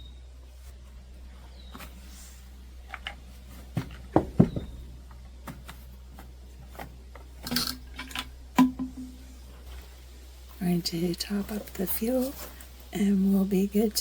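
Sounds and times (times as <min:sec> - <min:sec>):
objects knocking and clattering: 0:02.9 - 0:05.8, 0:06.6 - 0:09.3.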